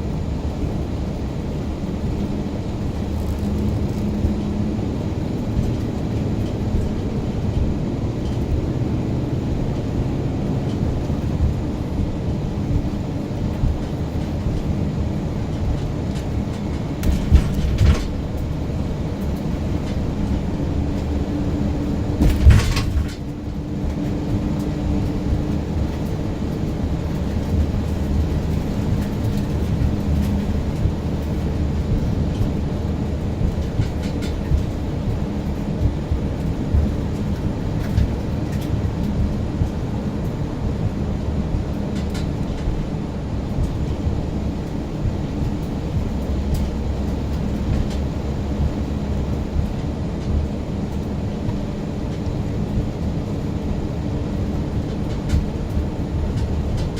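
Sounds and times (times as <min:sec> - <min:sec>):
vehicle engine and road noise: 0:00.0 - 0:56.9.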